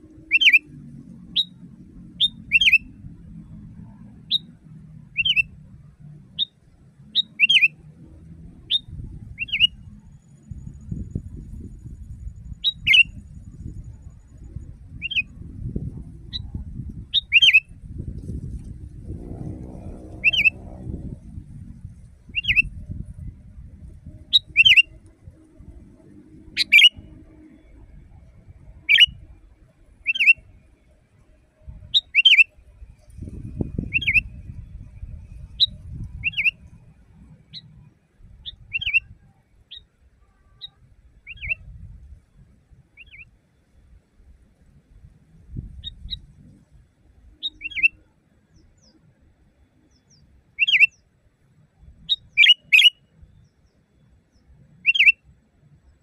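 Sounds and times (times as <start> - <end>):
bird giving sharp calls: 0.2 - 0.6, 20.2 - 20.7, 26.5 - 27.0
low rumble: 7.8 - 29.6, 32.8 - 38.8.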